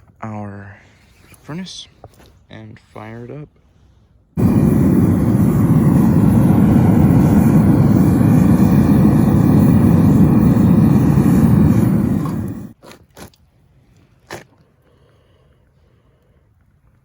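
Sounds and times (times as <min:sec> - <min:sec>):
gas furnace burner roaring: 0:04.4 - 0:12.8.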